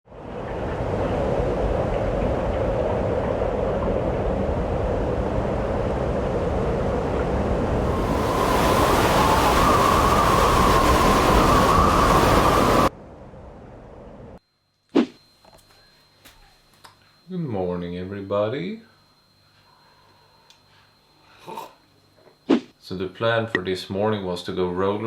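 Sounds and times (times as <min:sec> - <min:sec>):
blizzard wind rushing: 0:00.1 - 0:14.4.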